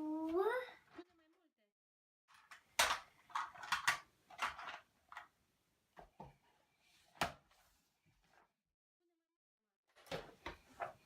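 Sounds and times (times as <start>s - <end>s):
plastic toys clacking and rattling: 2.3s - 5.3s.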